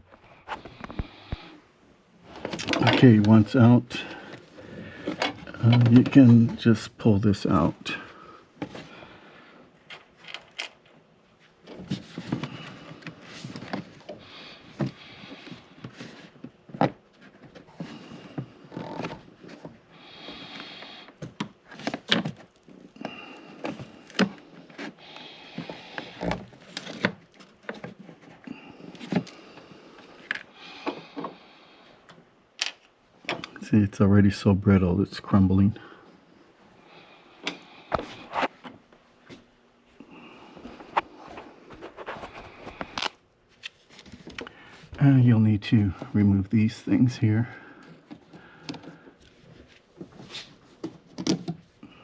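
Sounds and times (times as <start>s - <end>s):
plastic scraping and rustling: 2.2s - 3.4s, 4.1s - 6.7s, 40.7s - 44.5s.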